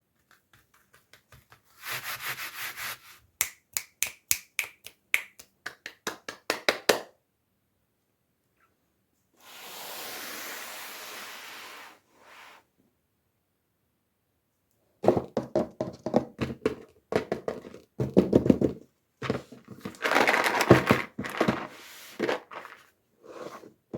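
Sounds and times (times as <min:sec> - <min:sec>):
packaging rustle: 0:19.7 - 0:22.9
packaging crinkle: 0:19.8 - 0:22.9.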